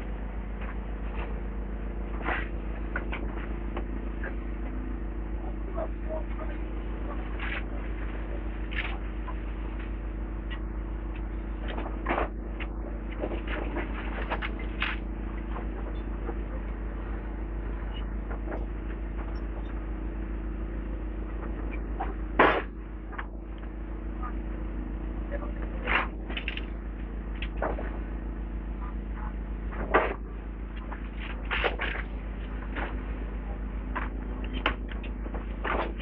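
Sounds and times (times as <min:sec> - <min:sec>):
excavator engine running: 0:00.0 - 0:36.0.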